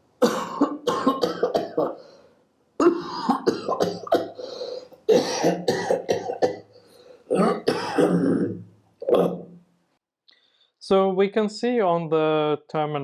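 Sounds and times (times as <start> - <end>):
person coughing: 0.2 - 2.1, 2.8 - 6.7, 7.3 - 9.5.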